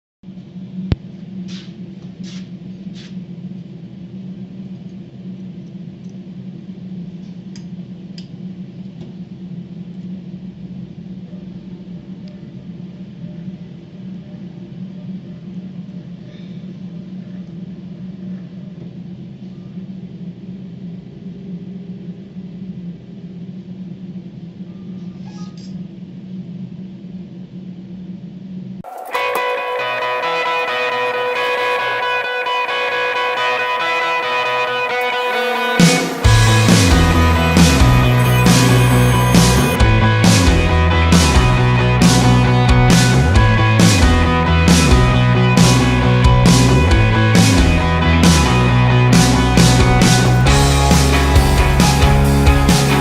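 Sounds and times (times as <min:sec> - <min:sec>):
cnc router humming: 0:28.9 - 0:41.0.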